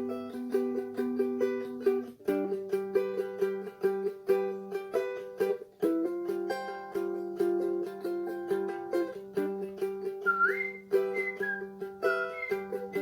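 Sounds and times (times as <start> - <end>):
plucked ukulele-like strings: 0.0 - 13.0.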